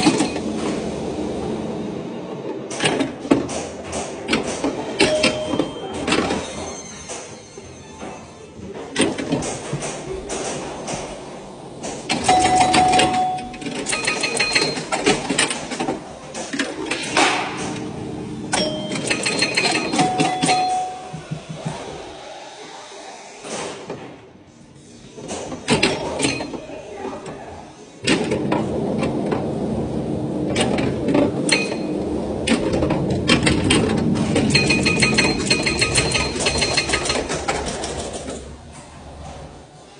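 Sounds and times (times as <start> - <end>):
pinball clacks and clicking: 2.7 - 6.4, 12.0 - 17.8, 18.5 - 21.8, 25.4 - 26.6, 30.6 - 38.5
pinball bell chimes: 5.0 - 6.0, 12.2 - 14.9, 18.5 - 21.4, 31.5 - 32.0, 34.5 - 37.2
steady mechanical rattle: 28.0 - 39.5.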